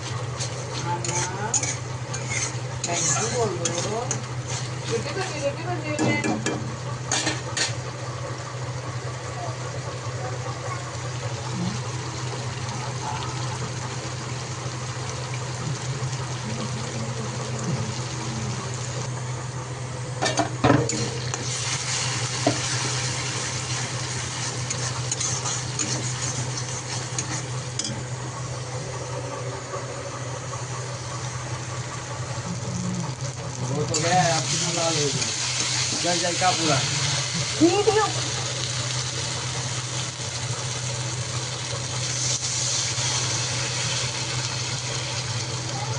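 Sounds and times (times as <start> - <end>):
fish sizzling in hot oil: 0.0 - 45.9
low hum: 4.2 - 36.0.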